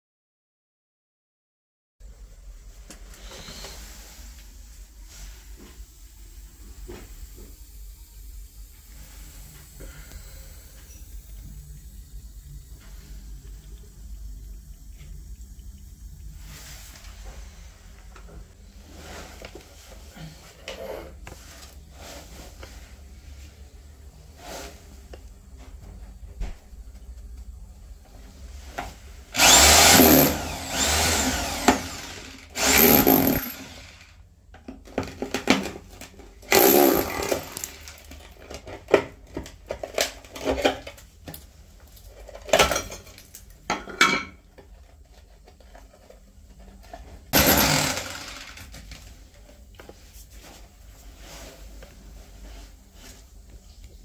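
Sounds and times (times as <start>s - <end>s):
power tool running in bursts: 29.3s - 34.1s, 36.5s - 38.0s, 47.4s - 48.7s.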